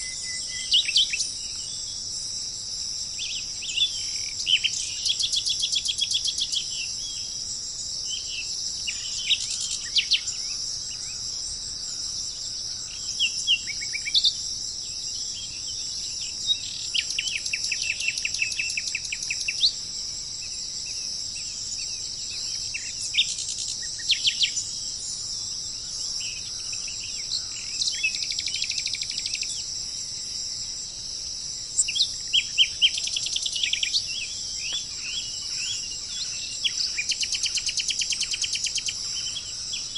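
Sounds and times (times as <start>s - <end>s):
insect drone: 0.0s - 39.9s
birds chirping and trilling: 8.0s - 19.8s, 31.8s - 39.9s.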